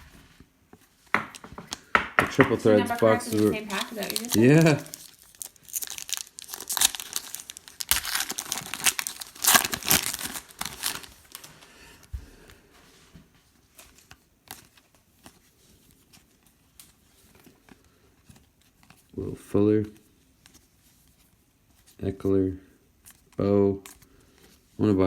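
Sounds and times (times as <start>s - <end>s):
foil wrappers crinkling and tearing: 2.8s - 11.7s.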